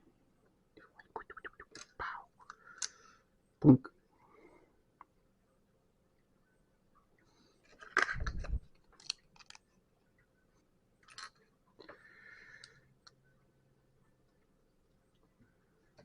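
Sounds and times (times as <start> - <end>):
plastic bricks clattering and clicking: 7.7 - 9.6.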